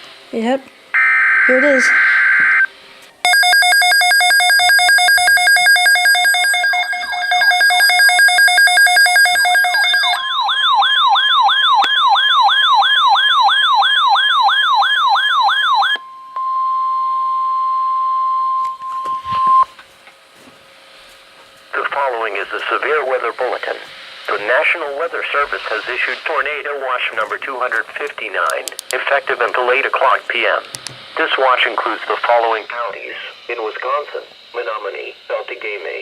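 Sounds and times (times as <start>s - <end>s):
fast warbling siren: 3.3s - 16.0s.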